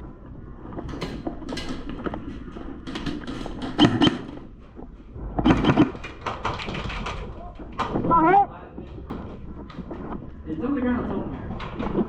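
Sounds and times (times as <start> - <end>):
sharp clicks and knocks: 0.6 - 8.1.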